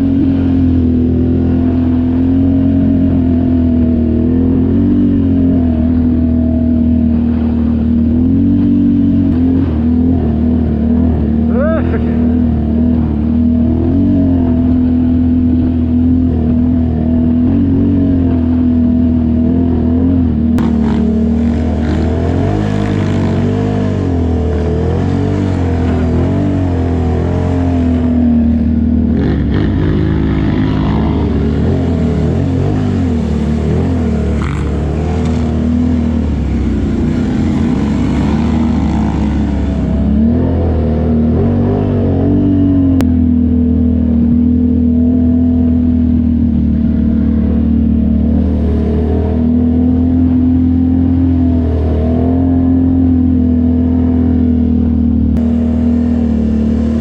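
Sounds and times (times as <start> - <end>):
atv engine running: 0.0 - 57.0.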